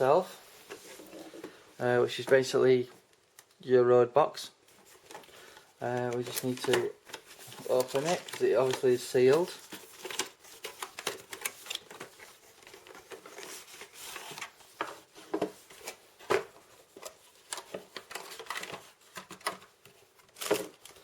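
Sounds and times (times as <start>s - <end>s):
cardboard box packaging handled: 4.8s - 21.0s.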